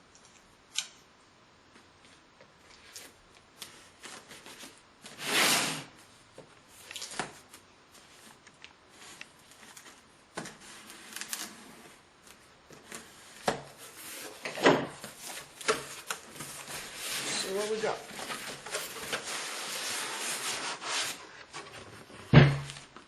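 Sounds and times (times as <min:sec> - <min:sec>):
cardboard packaging rustling: 0:06.7 - 0:23.0.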